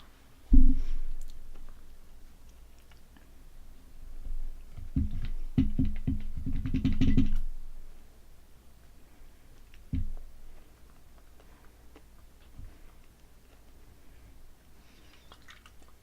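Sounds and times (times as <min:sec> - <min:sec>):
mouth clicks while snacking: 0:01.2 - 0:03.4, 0:15.0 - 0:16.0.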